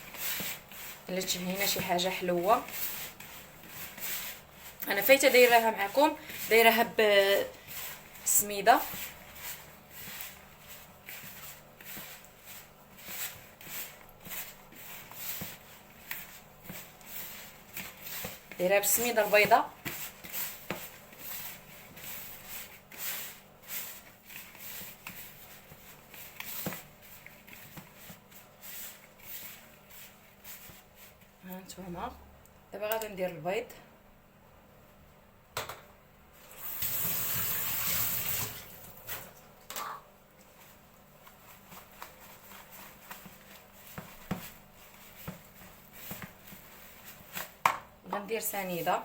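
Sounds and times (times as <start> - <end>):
hands rubbing flour in pan: 0.0 - 32.1, 40.4 - 49.0
kitchen taps and clicks: 35.6 - 36.0.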